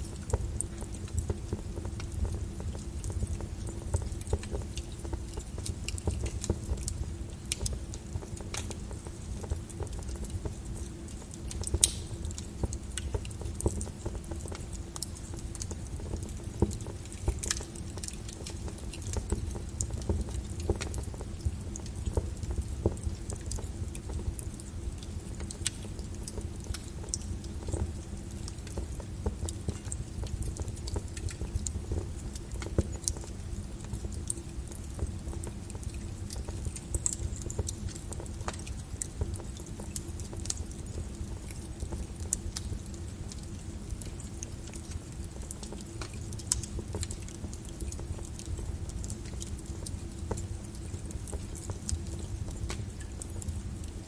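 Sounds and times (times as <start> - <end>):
rain pattering: 0.0 - 54.0
wood fire crackling: 0.0 - 54.0.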